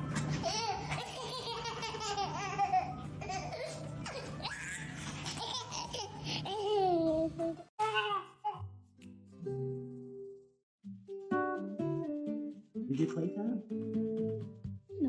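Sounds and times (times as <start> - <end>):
baby laughing: 0.3 - 8.6.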